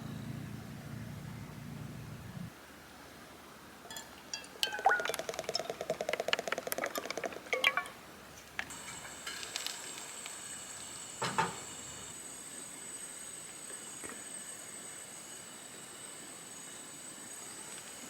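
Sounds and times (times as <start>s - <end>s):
small hard objects rattling: 4.4s - 8.0s, 8.6s - 10.4s.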